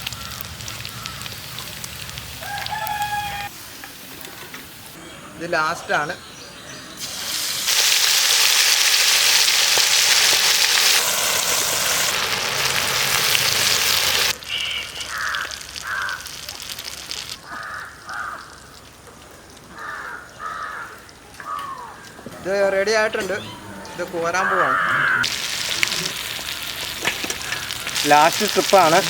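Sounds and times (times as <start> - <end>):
crows cawing: 0.0 - 1.6, 14.4 - 18.8, 19.7 - 22.4, 23.2 - 29.0
chicken deep-frying in oil: 0.0 - 4.9, 7.0 - 22.0, 25.2 - 29.0.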